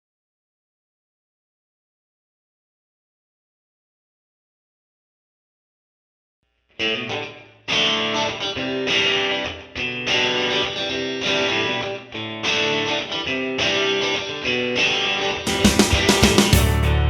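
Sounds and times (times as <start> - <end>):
strummed guitar chords: 6.8 - 17.0.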